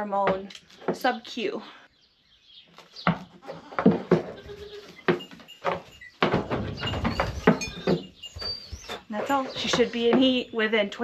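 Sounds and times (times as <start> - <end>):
knocks and handling noise: 2.8 - 10.5
goat bleating: 3.4 - 5.2.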